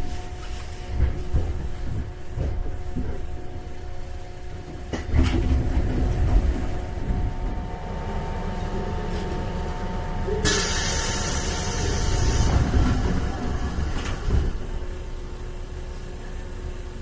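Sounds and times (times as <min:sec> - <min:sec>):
train interior low rumble: 0:00.0 - 0:17.0
compressed air hiss: 0:10.4 - 0:12.6.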